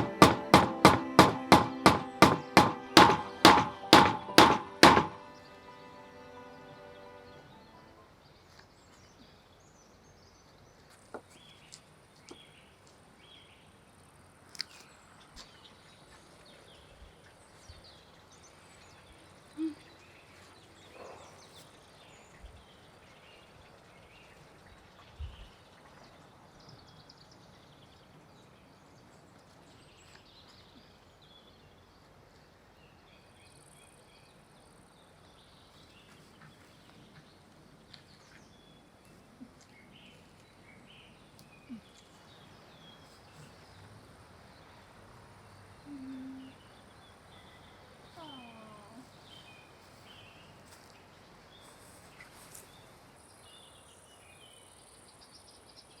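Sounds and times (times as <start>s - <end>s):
knocks and clicks: 0.0s - 5.3s.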